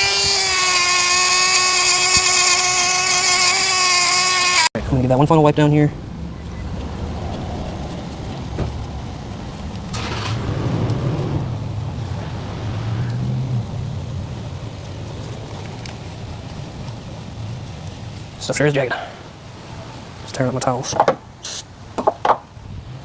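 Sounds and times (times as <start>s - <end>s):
loud scrape: 7.1s - 11.6s.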